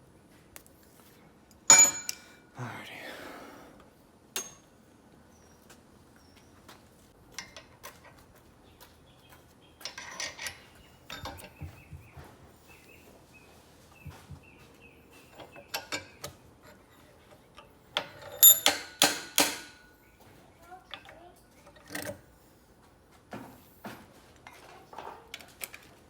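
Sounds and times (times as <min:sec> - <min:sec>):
clicks and knocks on metal parts: 0:01.7 - 0:02.3, 0:04.4 - 0:04.7, 0:09.8 - 0:11.7, 0:15.4 - 0:16.8, 0:17.5 - 0:19.9.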